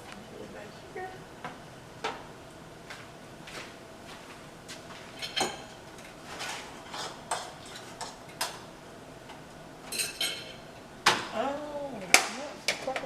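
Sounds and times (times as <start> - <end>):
utensils clinking against pots: 5.2 - 8.6, 9.9 - 10.7.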